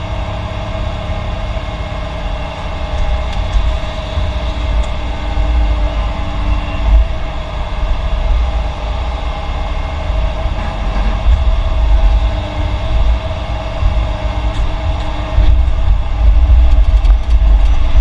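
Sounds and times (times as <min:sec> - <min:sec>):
constant machine whine: 0:00.0 - 0:18.0
diesel machinery engine rumble: 0:00.0 - 0:18.0.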